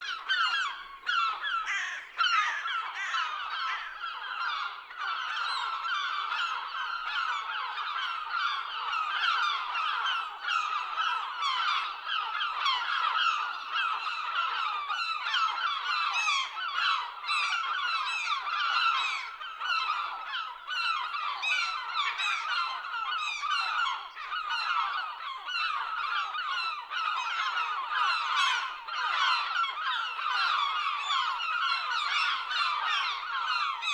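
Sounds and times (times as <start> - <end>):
gulls squawking: 0.1 - 6.6.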